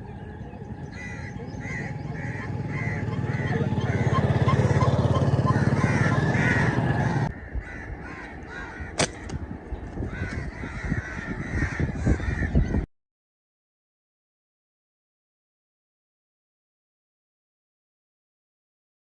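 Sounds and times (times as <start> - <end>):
dense low rumble: 0.0 - 12.8
crow-like caws: 0.9 - 12.9
sharp snap: 9.0 - 9.4.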